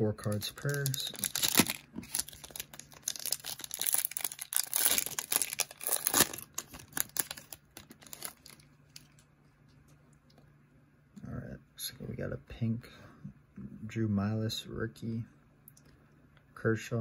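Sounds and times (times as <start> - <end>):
foil wrapper crinkling and tearing: 0.2 - 9.1.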